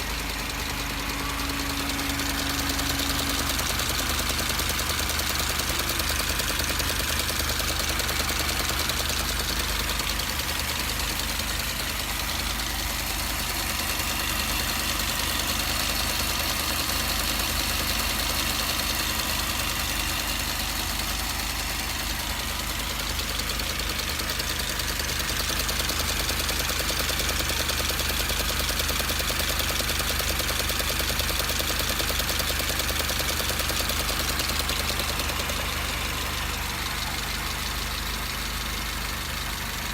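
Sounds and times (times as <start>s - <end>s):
car engine running: 0.0s - 39.9s
fast even engine knocking: 0.0s - 39.9s.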